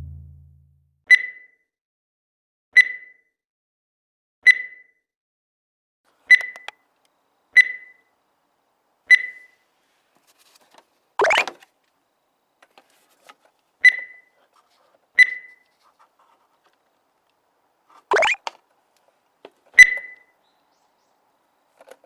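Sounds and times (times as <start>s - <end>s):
short high beeps: 18.1s - 18.4s.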